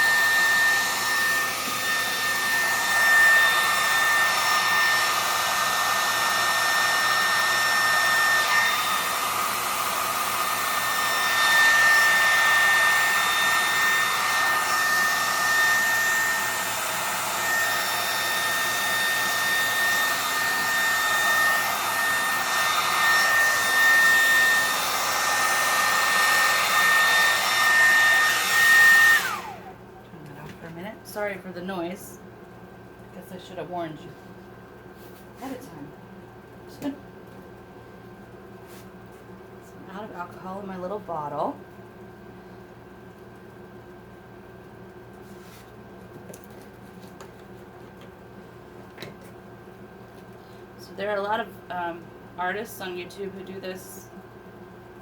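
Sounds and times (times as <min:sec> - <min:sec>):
hair dryer running: 0:00.0 - 0:30.6, 0:48.9 - 0:54.2.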